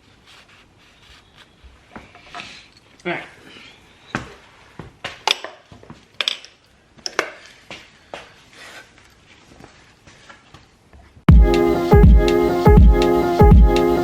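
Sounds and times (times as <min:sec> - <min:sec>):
loud music: 0:11.3 - 0:14.0.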